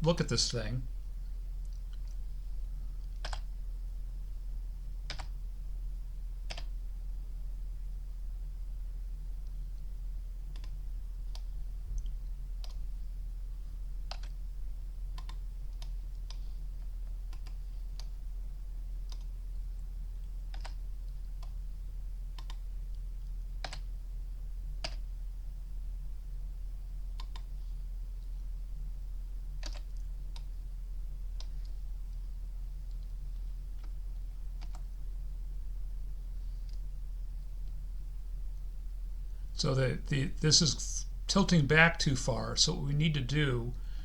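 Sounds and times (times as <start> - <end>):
steady low hum: 0.0 - 44.0
mouse and keyboard clicks: 3.2 - 3.5.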